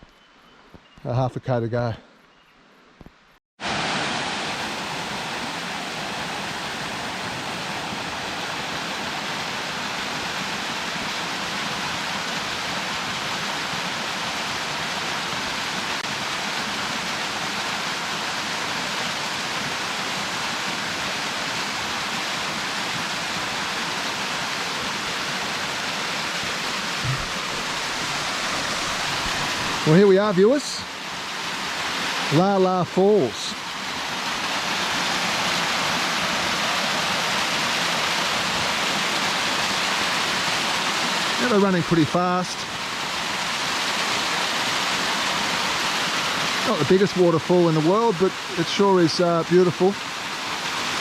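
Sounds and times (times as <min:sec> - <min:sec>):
waterfall rushing: 0:03.6 - 0:51.0
short low thump: 0:27.0 - 0:29.6.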